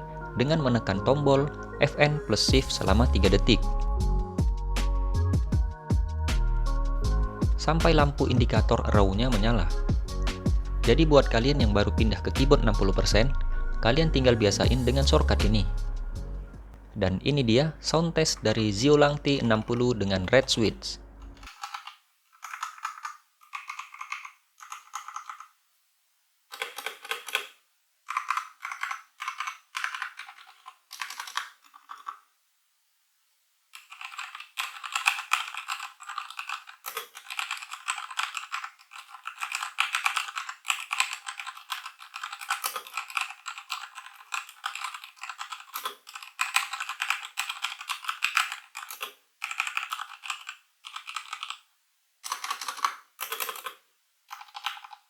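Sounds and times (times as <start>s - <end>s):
mechanical keyboard typing: 21.4s - 25.6s, 26.5s - 32.2s, 33.8s - 55.0s.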